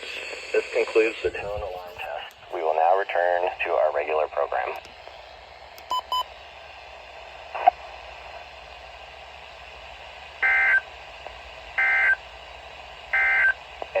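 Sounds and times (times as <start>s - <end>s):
radio static hiss: 0.0s - 5.3s, 6.6s - 9.0s, 13.1s - 14.0s.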